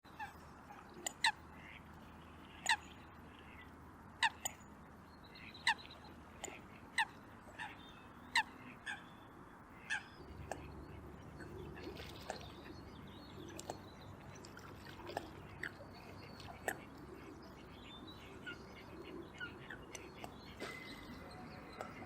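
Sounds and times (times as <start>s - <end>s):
coots calling: 15.1s - 22.0s.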